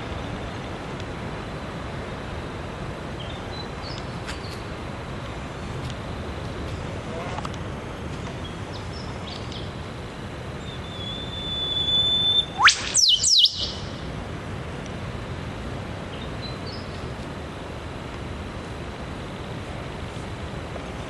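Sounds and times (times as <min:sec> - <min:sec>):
whistle ending in whip-crack: 0:12.0 - 0:13.7
quick falling bird notes: 0:12.0 - 0:13.8.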